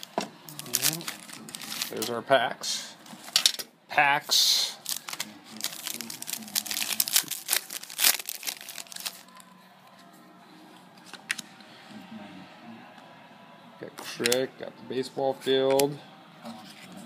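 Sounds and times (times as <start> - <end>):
foil wrapper crinkling: 0.0 - 2.1, 4.8 - 9.4.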